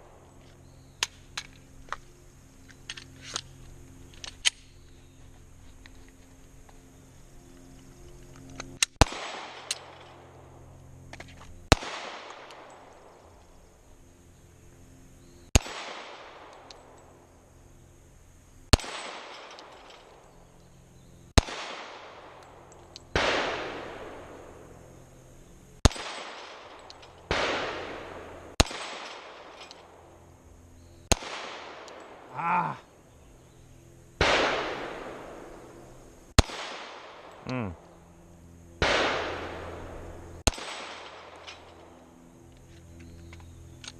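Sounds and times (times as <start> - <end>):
pistol shots: 8.9 - 10.0, 11.7 - 12.8, 15.5 - 16.7, 18.7 - 19.8, 21.4 - 22.4, 23.1 - 24.4, 25.8 - 30.0, 31.1 - 32.3, 34.2 - 35.6, 36.4 - 37.4, 38.8 - 41.5.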